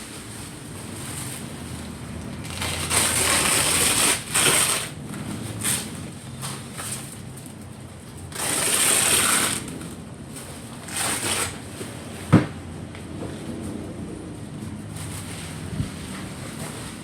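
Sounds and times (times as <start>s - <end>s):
fabric rustling: 0.0s - 7.4s.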